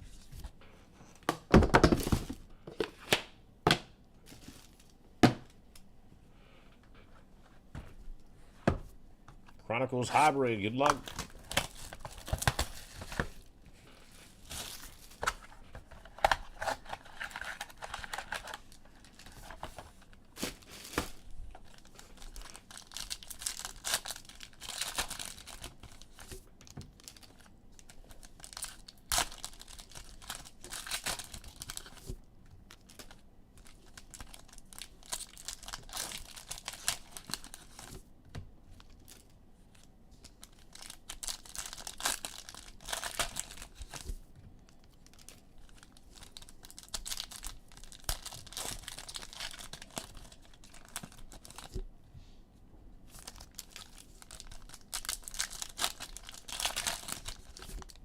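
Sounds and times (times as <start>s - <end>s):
foil wrappers tearing and crinkling: 10.8s - 13.5s, 14.3s - 26.4s, 27.0s - 32.1s, 32.7s - 38.0s, 40.2s - 44.1s, 44.7s - 51.8s, 53.1s - 58.0s.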